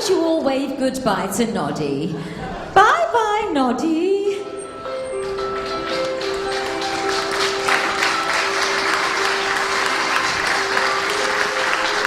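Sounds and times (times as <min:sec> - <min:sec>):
music with long held notes: 0:04.3 - 0:12.0
audience applauding: 0:05.2 - 0:12.0.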